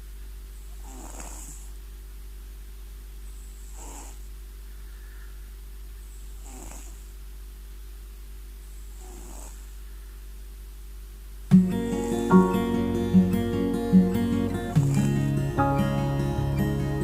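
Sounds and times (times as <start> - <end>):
cat snoring softly: 0.6 - 1.8, 3.3 - 4.3, 6.0 - 7.1, 8.6 - 9.9, 11.8 - 12.6, 14.7 - 15.8
acoustic guitar music: 11.5 - 17.0.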